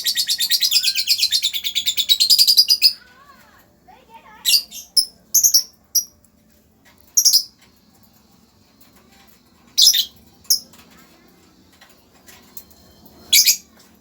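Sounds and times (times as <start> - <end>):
lovebird chirping: 7.2 - 7.5, 9.8 - 10.7, 13.2 - 13.8.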